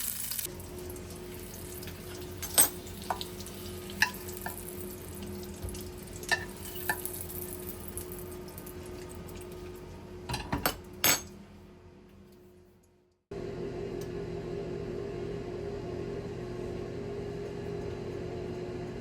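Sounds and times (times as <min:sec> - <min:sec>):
utensils and dishes clinking: 0:01.8 - 0:04.7, 0:06.2 - 0:07.2, 0:10.3 - 0:11.4.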